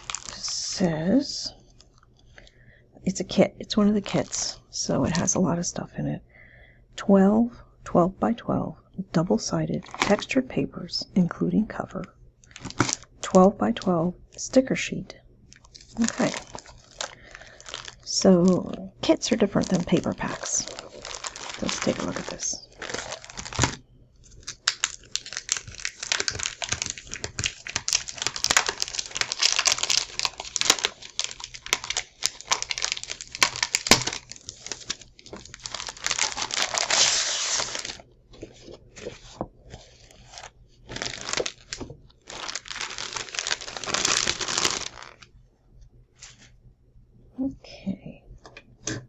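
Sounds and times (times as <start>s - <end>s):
paper wrapping crinkling and tearing: 0.0s - 0.8s, 9.8s - 10.3s, 12.5s - 13.2s, 15.5s - 45.3s.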